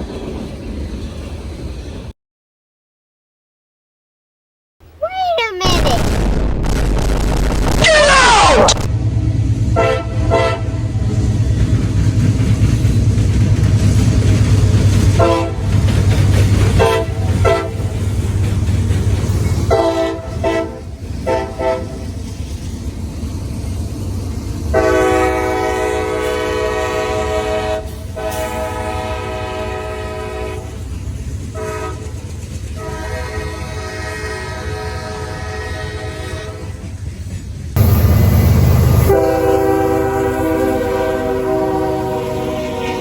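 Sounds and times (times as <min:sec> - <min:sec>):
heavy train rumble: 0:08.2 - 0:43.0
locomotive air horn: 0:09.8 - 0:11.0, 0:15.2 - 0:15.6, 0:16.8 - 0:17.8, 0:19.7 - 0:22.0, 0:24.7 - 0:30.8, 0:31.5 - 0:32.1, 0:32.8 - 0:36.8, 0:38.9 - 0:43.0.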